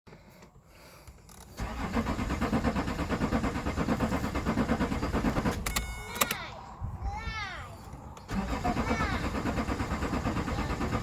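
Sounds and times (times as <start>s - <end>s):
engine cranking with starter: 1.2s - 6.4s, 8.2s - 11.0s
starter clicks: 5.1s - 6.4s.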